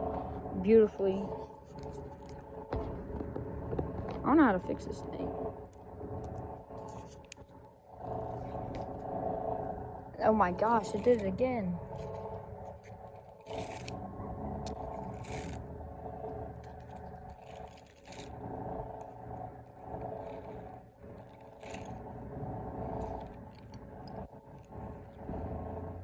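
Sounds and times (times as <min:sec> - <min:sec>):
steady hum: 0:00.0 - 0:26.0
fishing reel line scraping: 0:12.8 - 0:14.0, 0:14.7 - 0:15.6, 0:16.6 - 0:18.4, 0:20.2 - 0:22.0.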